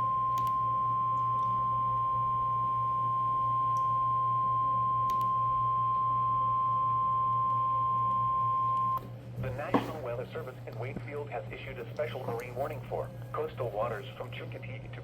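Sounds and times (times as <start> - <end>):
steady alarm tone: 0.0 - 9.0
low hum: 0.0 - 15.0.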